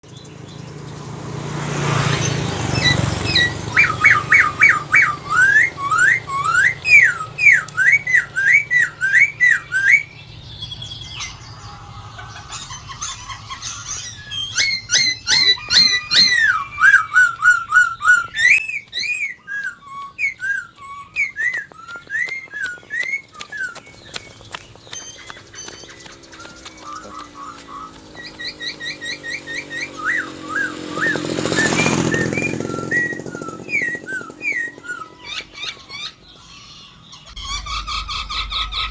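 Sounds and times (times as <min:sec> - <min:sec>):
bird singing whistled notes: 0:02.0 - 0:38.9
brief rushing noise: 0:37.3 - 0:38.9.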